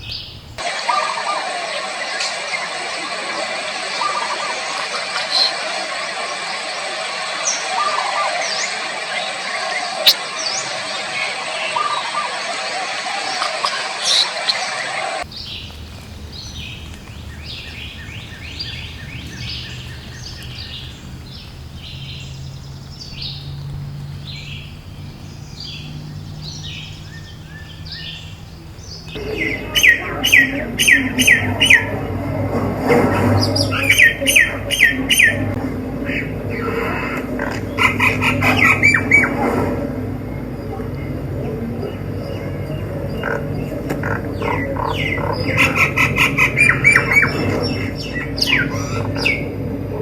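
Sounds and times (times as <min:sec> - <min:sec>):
birds chirping: 0:00.0 - 0:50.0
low hum: 0:00.0 - 0:50.0
bird sharp repeated notes: 0:25.4 - 0:31.9, 0:33.5 - 0:35.6.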